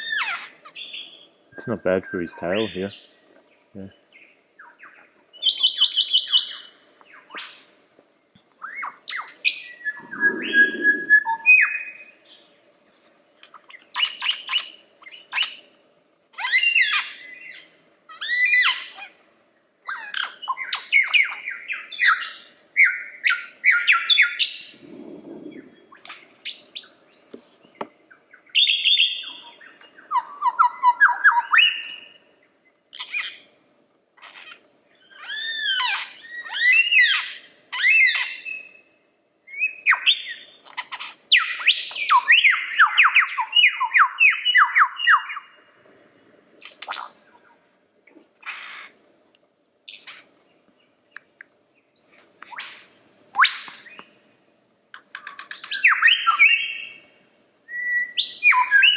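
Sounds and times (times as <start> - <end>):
lyrebird singing: 0.0 - 7.7, 8.6 - 12.5, 19.9 - 32.2, 39.5 - 45.6, 49.9 - 54.2, 54.9 - 57.0, 57.7 - 58.9.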